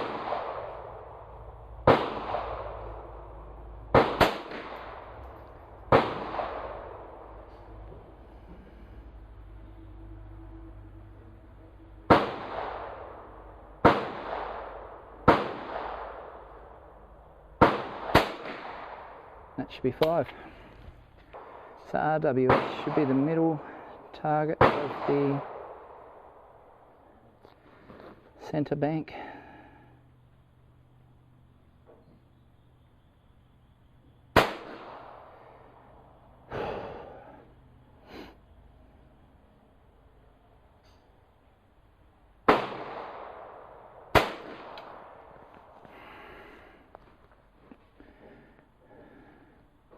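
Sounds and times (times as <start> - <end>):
pistol shots with echo: 0.0 - 3.3, 3.9 - 5.2, 5.9 - 7.5, 12.1 - 16.8, 17.6 - 20.2, 21.4 - 23.8, 24.5 - 26.4, 34.3 - 35.4, 42.4 - 45.4.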